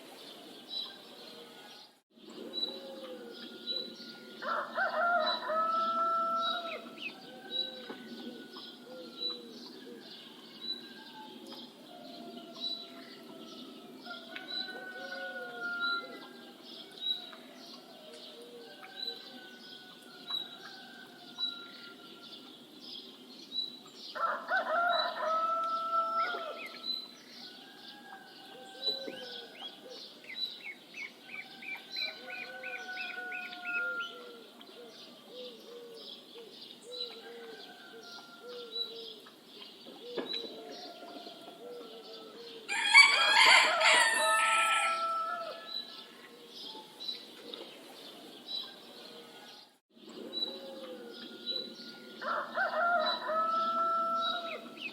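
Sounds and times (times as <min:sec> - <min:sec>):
songbirds chirping: 0:00.0 - 0:54.9
rooster crowing: 0:03.0 - 0:09.2, 0:11.0 - 0:16.6, 0:24.2 - 0:26.8, 0:31.4 - 0:34.4, 0:40.8 - 0:46.0, 0:50.7 - 0:54.8.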